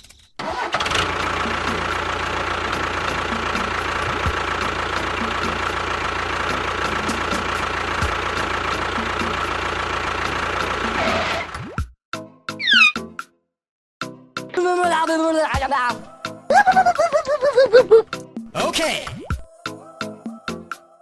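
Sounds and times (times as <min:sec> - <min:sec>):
engine idling: 0:00.4 - 0:11.6.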